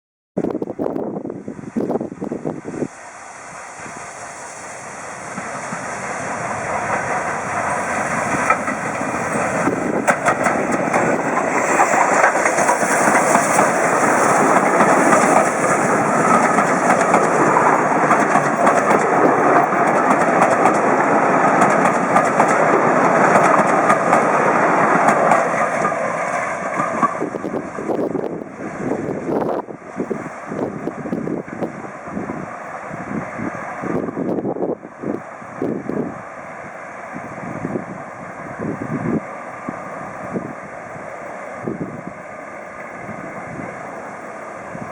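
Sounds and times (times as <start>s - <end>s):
steam train passing: 0.4s - 44.9s
wheels clattering over rail joints: 5.3s - 27.9s.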